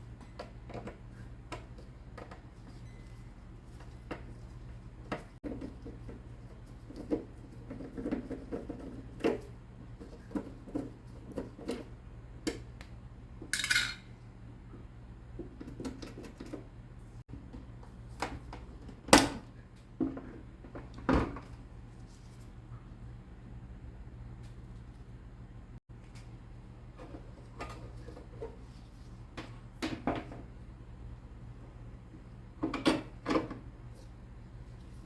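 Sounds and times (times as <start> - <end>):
parts and tools clinking: 13.6 - 14.1.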